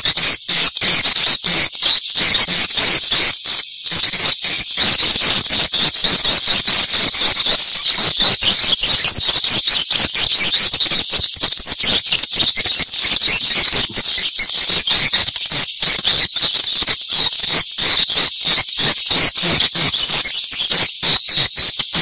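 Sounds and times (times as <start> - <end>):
swiftlets twittering: 2.9 - 17.0.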